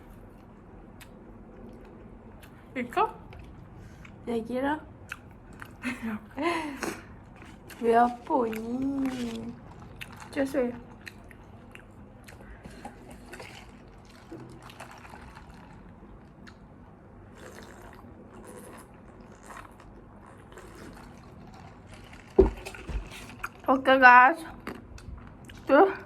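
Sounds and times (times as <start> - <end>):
wet chewing and mouth clicks: 5.1 - 5.8, 6.8 - 16.7, 17.3 - 23.7, 24.6 - 25.7.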